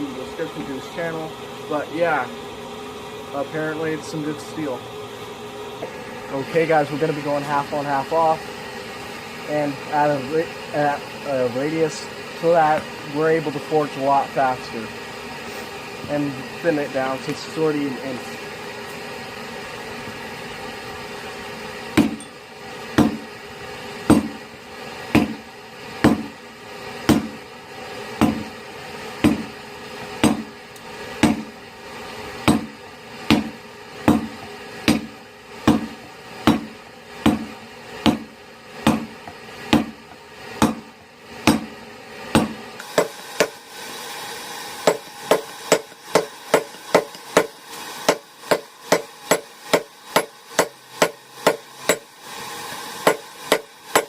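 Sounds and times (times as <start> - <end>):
steady hum: 0.0 - 54.0
hammer striking steel on anvil: 22.0 - 22.4, 23.0 - 23.3, 24.1 - 24.4, 25.1 - 25.4, 26.0 - 26.4, 27.1 - 27.4, 28.2 - 28.5, 29.2 - 29.5, 30.2 - 30.5, 31.2 - 31.5, 32.5 - 40.0, 40.6 - 43.6, 44.8 - 52.1, 53.0 - 54.0.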